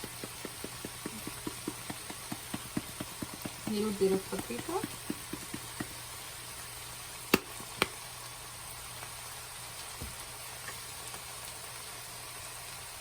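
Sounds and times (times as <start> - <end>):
sharp knocks: 0.0 - 6.0, 7.3 - 8.0
food sizzling in a pan: 0.0 - 13.0.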